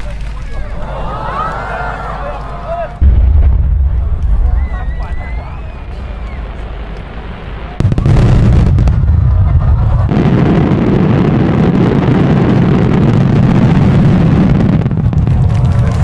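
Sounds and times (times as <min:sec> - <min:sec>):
distant fireworks booming: 0:03.0 - 0:16.0.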